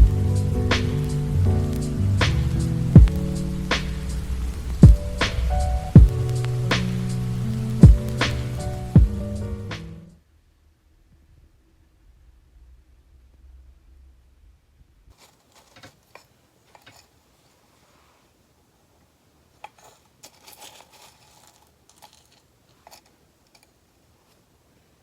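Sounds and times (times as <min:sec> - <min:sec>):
paper rustling: 0:15.1 - 0:18.3, 0:19.6 - 0:24.4.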